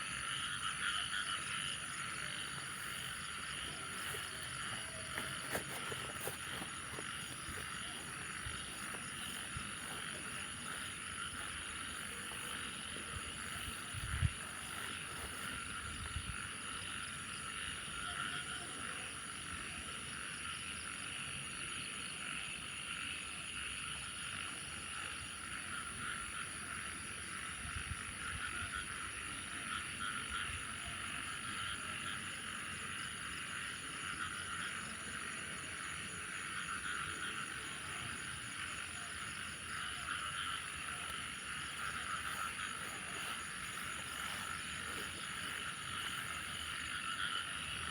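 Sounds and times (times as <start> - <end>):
chorus of frogs calling: 0.0 - 47.9
high-pitched insect drone: 0.1 - 18.8, 32.6 - 47.9.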